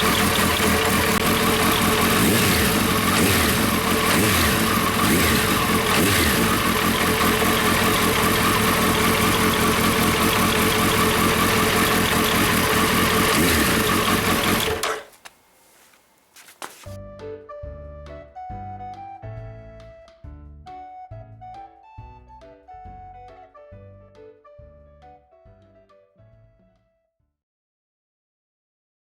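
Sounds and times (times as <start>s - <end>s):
motorcycle engine idling: 0.0s - 15.2s.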